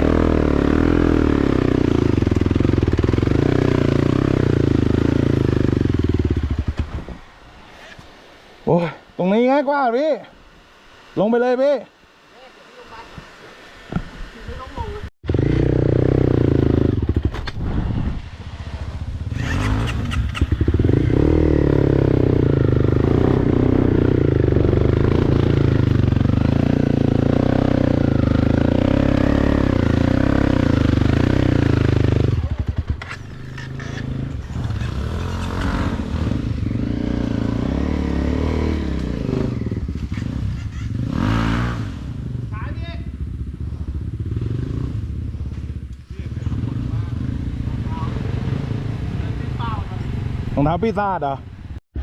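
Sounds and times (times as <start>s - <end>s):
motorcycle engine running hard: 0.0s - 7.0s, 15.2s - 17.7s, 18.6s - 50.6s.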